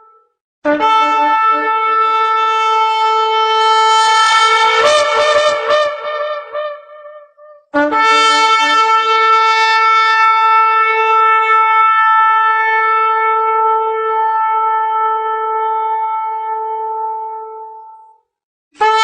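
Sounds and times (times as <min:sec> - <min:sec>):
shofar blast: 0:00.0 - 0:17.6, 0:18.8 - 0:19.0.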